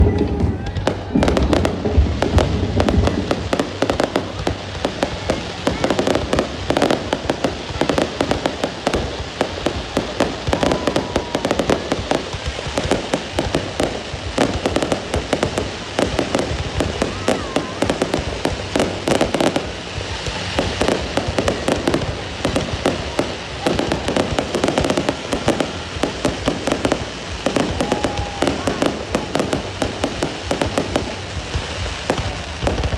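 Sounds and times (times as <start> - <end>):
fireworks crackling: 0.0 - 32.9.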